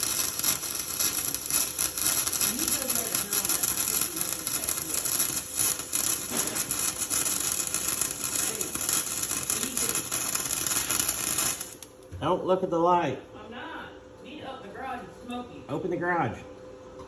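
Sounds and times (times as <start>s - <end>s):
welder arc crackling and sizzling: 0.0s - 12.1s.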